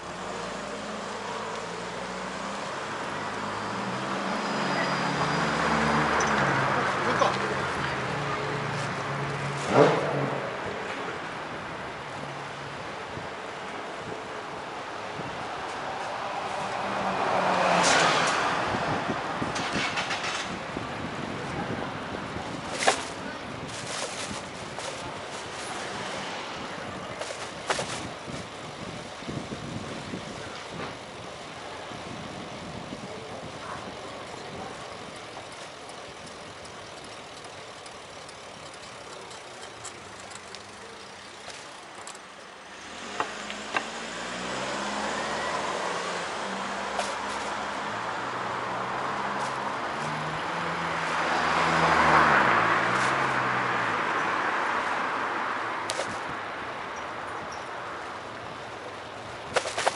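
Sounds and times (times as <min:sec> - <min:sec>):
traffic passing: 0:00.0 - 0:59.9
wind and road noise: 0:00.0 - 0:59.9
vehicle engine running: 0:33.6 - 0:42.2.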